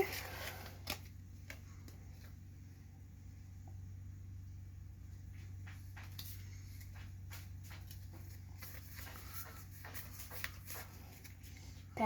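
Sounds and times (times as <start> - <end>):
cards and foil packaging rustling: 0.0 - 2.5, 6.1 - 12.0
low electrical hum: 0.0 - 12.0.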